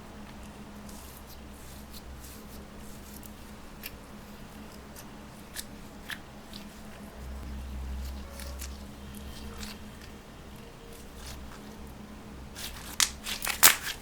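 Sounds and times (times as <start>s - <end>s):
low rumble of handling noise: 0.0s - 14.0s
slime clicking and crackling: 12.6s - 14.0s.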